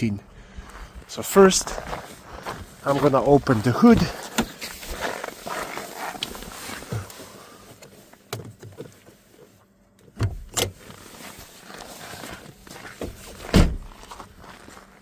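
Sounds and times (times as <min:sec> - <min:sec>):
car hood clunks and knocks: 0:13.0 - 0:13.9.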